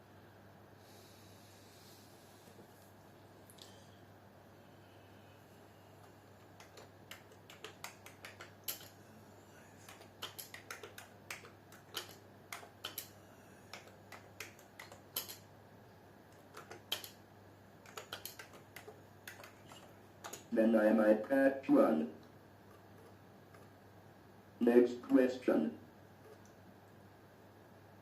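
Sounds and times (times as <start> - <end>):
computer keyboard typing: 6.0 - 15.4, 16.3 - 17.2, 17.8 - 21.4.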